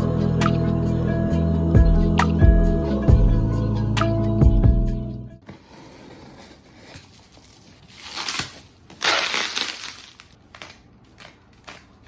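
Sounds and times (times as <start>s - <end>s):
packaging crinkling: 7.4s - 12.0s.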